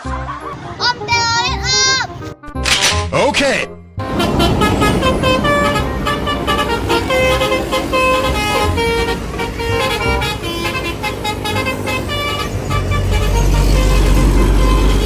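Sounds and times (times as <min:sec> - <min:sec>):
low rumble: 0:04.0 - 0:15.0
musical air horn melody: 0:04.0 - 0:15.0.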